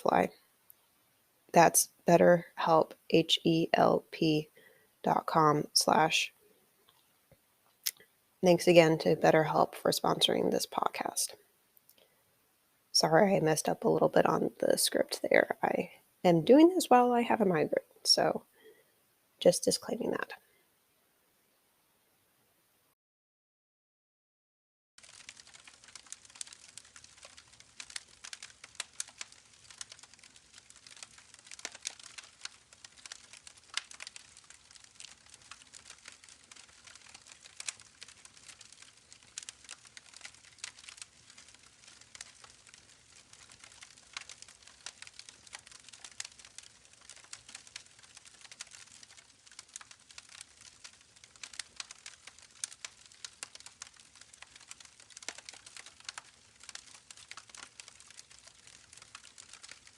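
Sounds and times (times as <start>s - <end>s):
soft steady hiss: 0.0s - 23.0s, 25.0s - 59.9s
campfire crackling: 25.0s - 59.9s.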